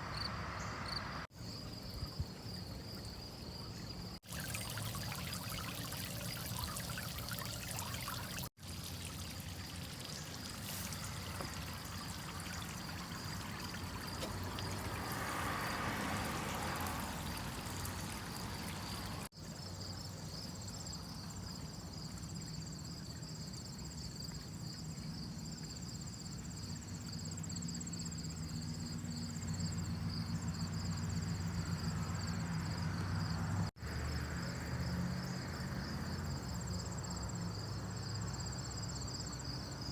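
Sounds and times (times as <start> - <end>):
insects trilling: 0.0 - 39.9
water trickling: 3.7 - 19.3.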